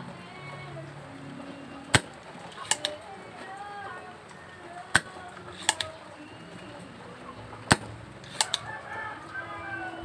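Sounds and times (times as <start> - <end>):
desoldering clicks: 1.8 - 6.8, 7.6 - 8.7.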